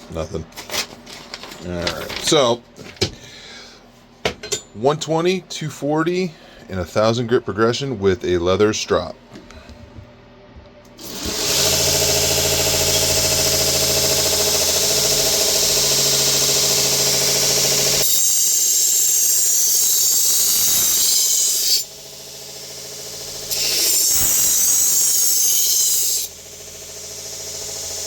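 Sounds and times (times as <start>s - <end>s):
belt grinder hiss: 11.0s - 28.0s
belt grinder humming: 11.0s - 28.0s.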